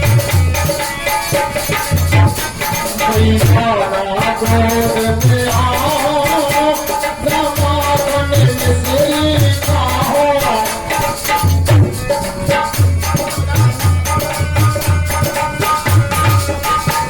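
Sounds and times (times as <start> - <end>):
deep hand-drum beats: 0.0 - 17.0
held harmonium tones: 0.0 - 17.0
jingling rattling percussion: 0.0 - 17.0.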